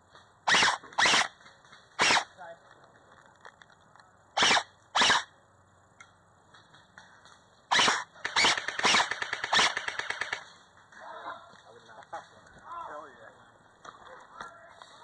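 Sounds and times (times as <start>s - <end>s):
airsoft gun firing: 0.5s - 2.3s, 4.4s - 5.3s, 7.7s - 10.5s.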